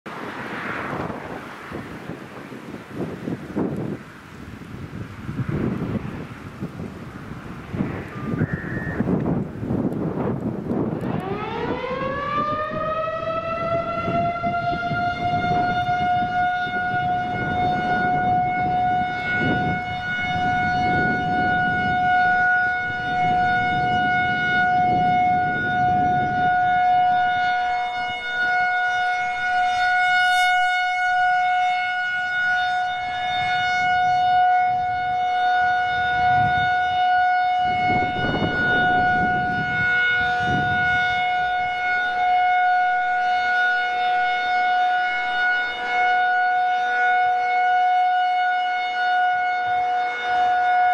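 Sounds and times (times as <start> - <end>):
wind buffeting microphone: 0.1 - 50.9
warning siren steady tone: 4.8 - 50.9.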